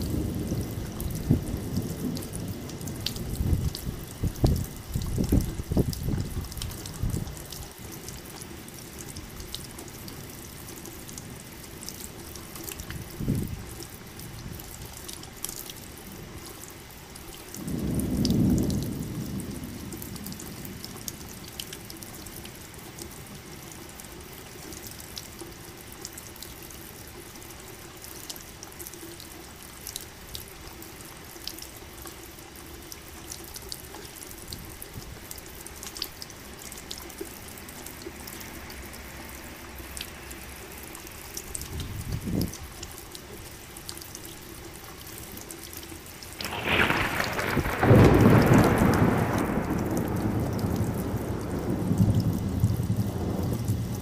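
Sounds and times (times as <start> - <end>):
thunder rumbling: 0.0 - 7.5, 12.8 - 14.6, 17.6 - 21.4, 46.4 - 54.0
dripping water: 0.0 - 54.0
steady rain: 0.0 - 54.0
loud thunderclap: 46.4 - 54.0.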